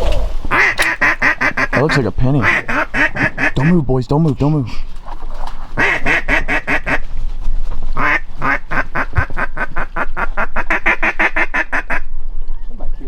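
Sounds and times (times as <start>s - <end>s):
duck quacking: 0.5s - 3.8s, 5.8s - 7.0s, 8.0s - 12.1s.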